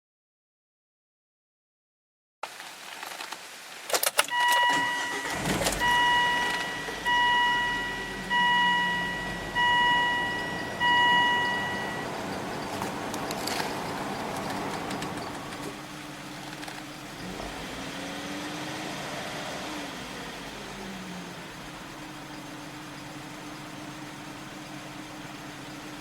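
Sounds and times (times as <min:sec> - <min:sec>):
car engine starting and idling: 0:04.0 - 0:26.0
warning chime: 0:04.3 - 0:12.7
starter clicks: 0:12.3 - 0:15.8.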